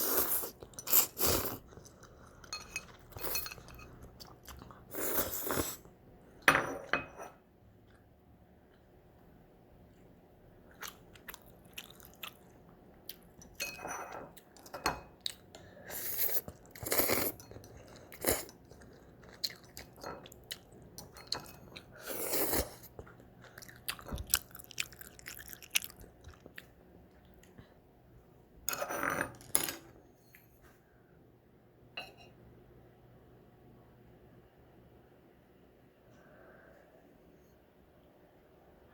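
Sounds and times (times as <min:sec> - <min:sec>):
person chewing and crunching: 0:00.0 - 0:05.8, 0:10.7 - 0:13.4, 0:14.4 - 0:27.6.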